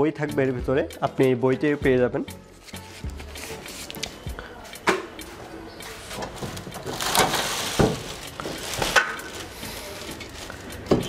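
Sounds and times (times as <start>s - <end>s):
rustling: 5.8s - 11.0s.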